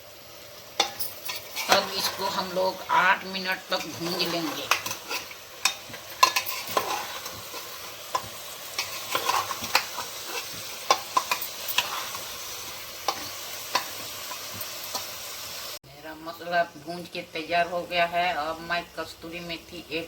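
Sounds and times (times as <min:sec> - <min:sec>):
chickpeas sizzling in oil: 0:00.0 - 0:20.0
utensil scraping metal pot: 0:00.8 - 0:15.4.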